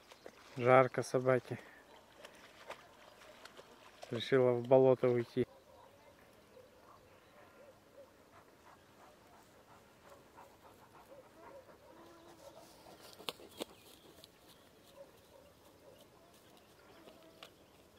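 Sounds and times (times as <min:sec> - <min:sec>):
dog panting: 0:08.0 - 0:14.2.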